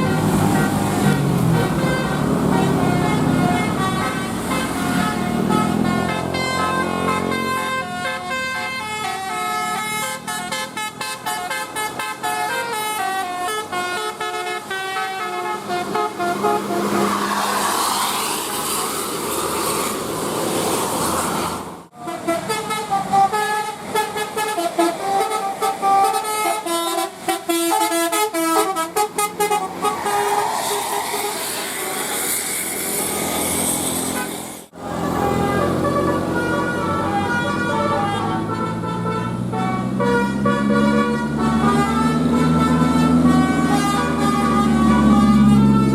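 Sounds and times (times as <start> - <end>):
multi-tone bus air horns melody: 0.0 - 17.4, 21.9 - 45.9
rushing noise: 16.4 - 21.9, 29.2 - 35.2.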